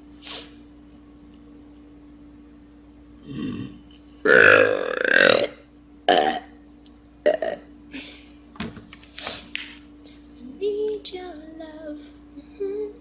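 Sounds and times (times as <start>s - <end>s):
girl burping: 3.2s - 6.5s.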